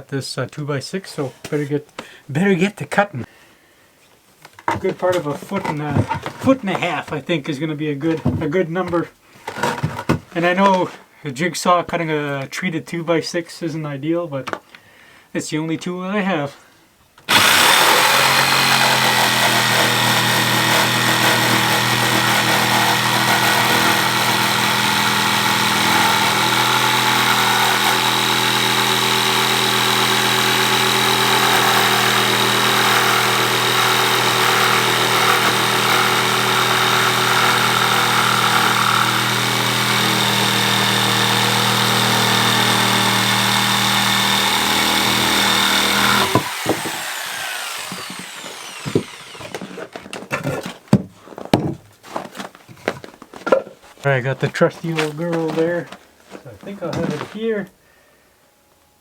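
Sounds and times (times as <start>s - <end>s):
jigsaw cutting wood: 17.3s - 50.1s.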